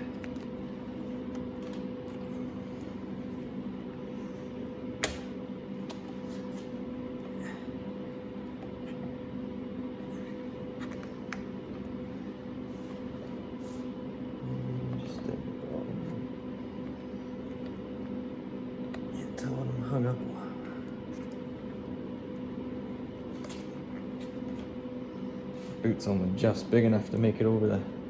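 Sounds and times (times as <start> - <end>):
workshop hum: 0.0 - 28.0.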